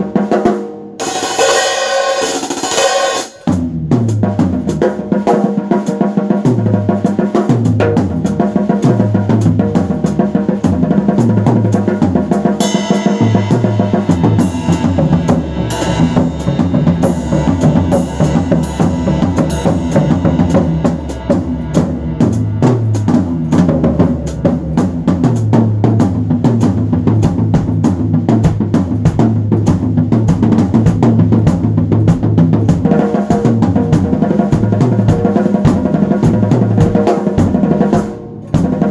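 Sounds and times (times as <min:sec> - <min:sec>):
drum kit music with bass line: 0:00.0 - 0:38.9
cymbal crashes: 0:01.0 - 0:03.6, 0:12.6 - 0:25.0.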